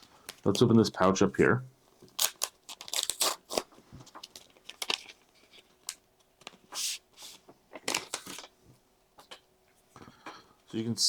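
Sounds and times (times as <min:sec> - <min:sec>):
pouch tearing and crinkling: 0:02.2 - 0:03.7.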